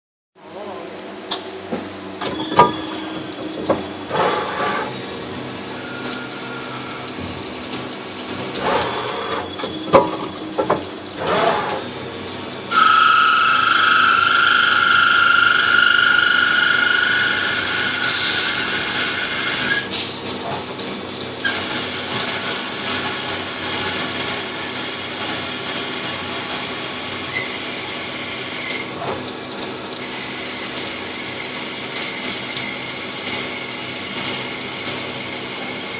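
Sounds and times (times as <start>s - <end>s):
machine humming: 12.6s - 19.3s
high-pitched cutting whine: 12.7s - 19.2s.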